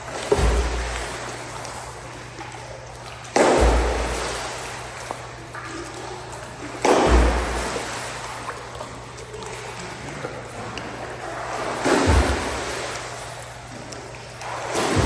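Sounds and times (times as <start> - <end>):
heavy splash into pool: 3.3 - 5.2, 6.8 - 8.8, 11.2 - 13.4, 14.4 - 15.0.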